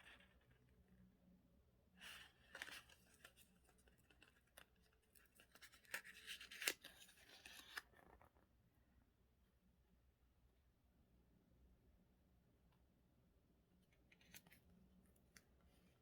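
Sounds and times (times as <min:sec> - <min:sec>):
paper rustling and scratching: 0:02.0 - 0:08.3.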